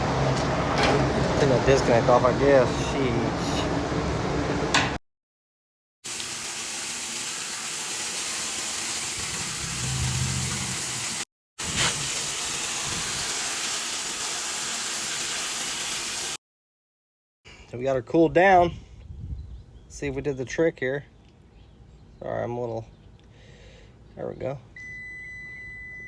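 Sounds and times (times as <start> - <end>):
hose spraying water hiss: 6.1 - 16.4.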